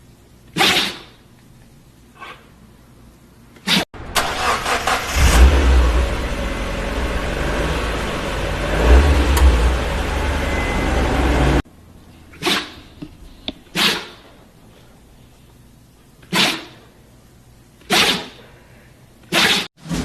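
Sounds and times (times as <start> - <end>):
car engine cranking and revving: 4.0 - 11.6.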